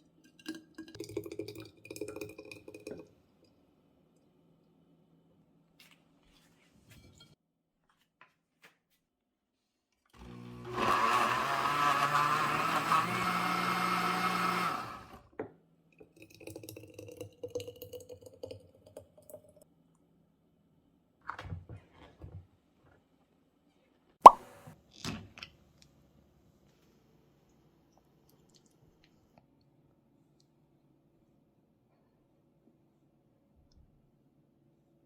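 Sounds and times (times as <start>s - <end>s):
electric blender running: 10.2s - 15.3s.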